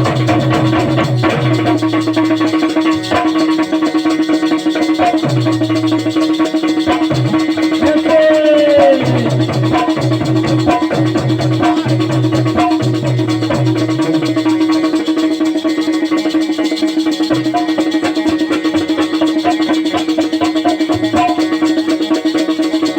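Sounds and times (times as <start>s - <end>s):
repeating bass figure: 0.0s - 3.6s, 5.0s - 14.8s
gliding lead tone: 0.0s - 21.6s
fast even percussion: 0.0s - 22.9s
instrumental folk music: 0.0s - 22.9s
steady drone: 5.2s - 14.8s.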